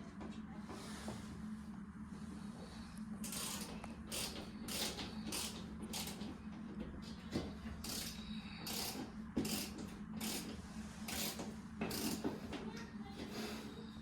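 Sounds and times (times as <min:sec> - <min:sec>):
steady low hum: 0:00.0 - 0:14.0
scraping strokes on vent parts: 0:07.4 - 0:13.7.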